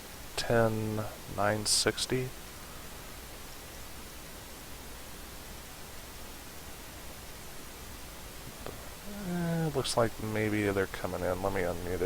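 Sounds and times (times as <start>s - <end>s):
steady hiss: 0.0s - 12.0s.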